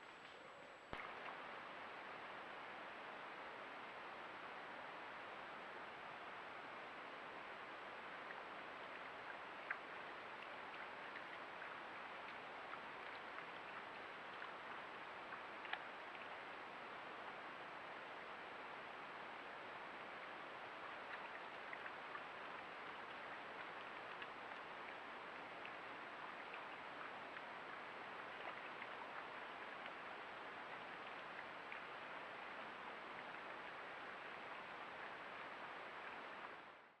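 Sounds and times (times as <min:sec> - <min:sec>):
faint rushing water: 0:00.0 - 0:37.0
tiny ticks: 0:15.3 - 0:16.3.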